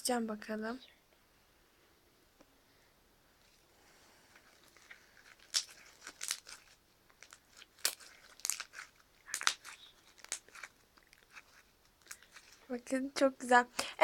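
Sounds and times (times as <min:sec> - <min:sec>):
slime crackling and popping: 0:04.4 - 0:12.6.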